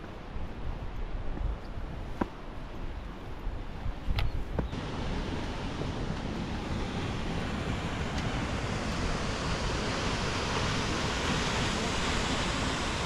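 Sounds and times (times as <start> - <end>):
steady rushing hiss: 4.7 - 13.0.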